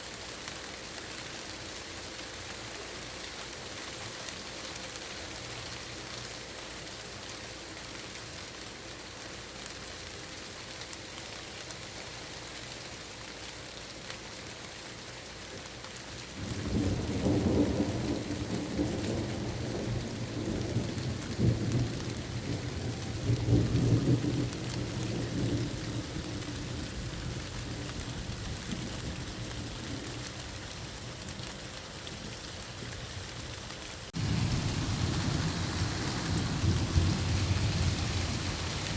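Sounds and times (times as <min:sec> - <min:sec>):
steady rain: 0:00.0 - 0:38.9
thunder rolling: 0:16.4 - 0:30.1, 0:34.2 - 0:38.9.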